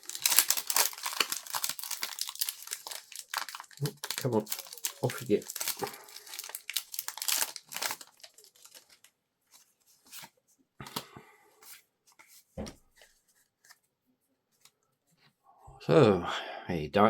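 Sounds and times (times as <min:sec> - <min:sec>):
foil wrapper crinkling: 0:00.0 - 0:09.1.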